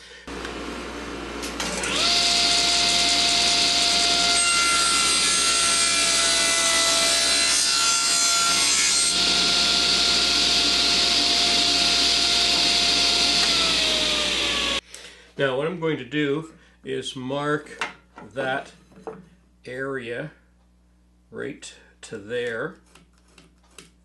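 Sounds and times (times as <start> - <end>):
table saw cutting wood: 1.4 - 14.8.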